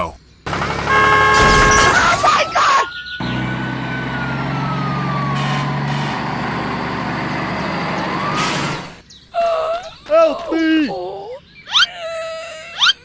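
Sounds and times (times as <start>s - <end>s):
siren-like tone: 0.5s - 7.1s
vehicle engine running: 0.5s - 9.0s.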